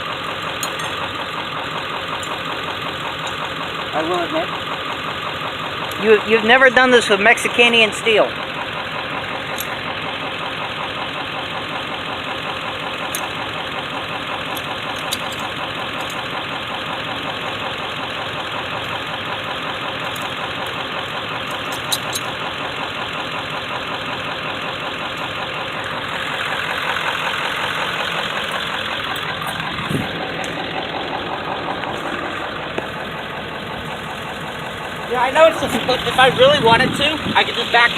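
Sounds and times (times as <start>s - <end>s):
truck engine idling: 0.0s - 37.9s
sharp metallic click: 0.6s - 1.0s, 21.4s - 22.4s.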